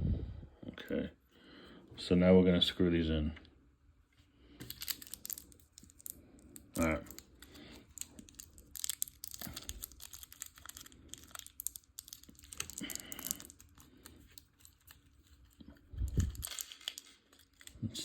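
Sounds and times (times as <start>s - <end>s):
plastic parts clicking: 4.6s - 15.0s
packaging rustling and crinkling: 4.6s - 17.9s.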